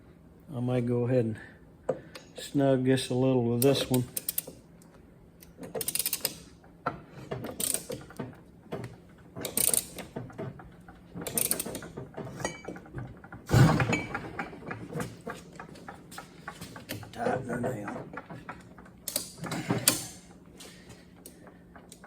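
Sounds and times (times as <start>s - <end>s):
hand ratchet clicking: 3.6s - 4.6s, 5.4s - 6.5s, 7.4s - 8.2s, 9.4s - 10.1s, 19.0s - 20.3s.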